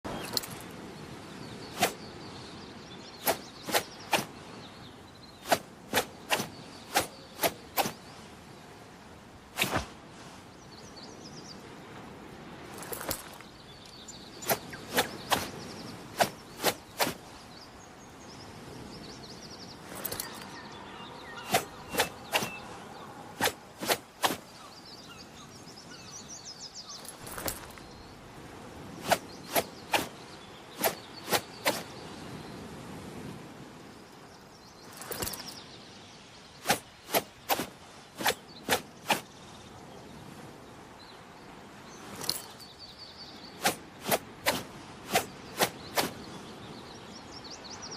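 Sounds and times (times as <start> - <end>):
faint birds: 0.0 - 47.9
sword swishing: 9.6 - 9.9, 21.4 - 22.6, 23.4 - 24.4, 30.8 - 31.8, 36.6 - 39.2, 43.6 - 46.2.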